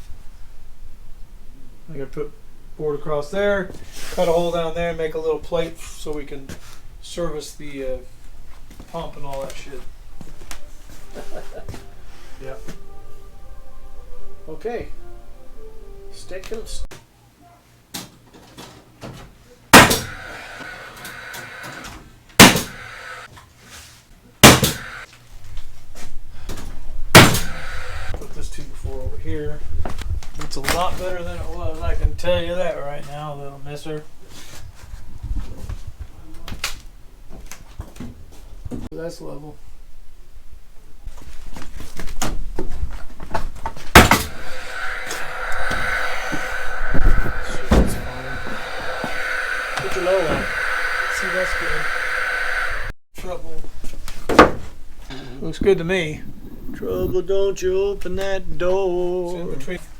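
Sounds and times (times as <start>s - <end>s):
high-pitched hum with hiss: 19.7s - 23.3s, 24.4s - 25.1s, 27.1s - 28.3s, 44.0s - 53.0s
hammer striking nails: 22.4s - 22.8s.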